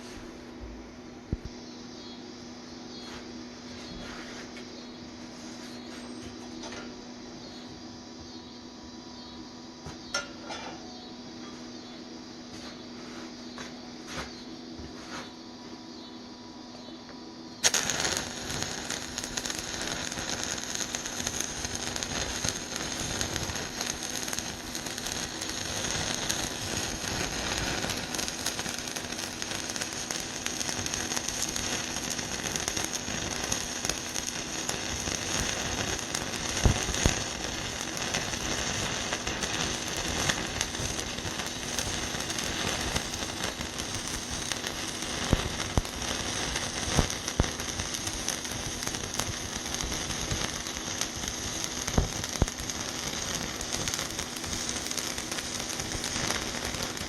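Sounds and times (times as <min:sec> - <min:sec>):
welding arc crackling: 0:00.0 - 0:00.3, 0:17.6 - 0:57.0
steady hum: 0:00.0 - 0:57.0
welding pops: 0:01.3 - 0:01.6, 0:17.6 - 0:57.0.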